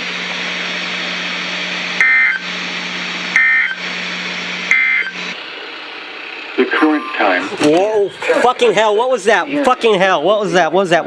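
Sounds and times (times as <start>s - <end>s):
radio hum and static: 6.4s - 9.7s.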